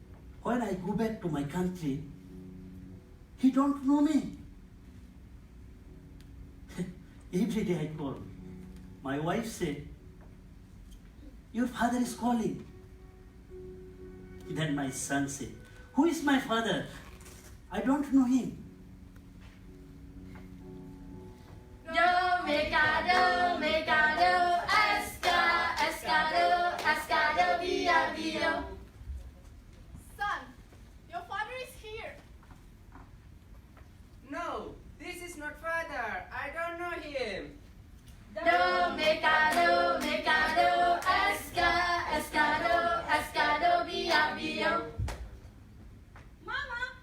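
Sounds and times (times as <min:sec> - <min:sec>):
faint low steady tones: 0:00.0 - 0:17.0, 0:17.6 - 0:24.6.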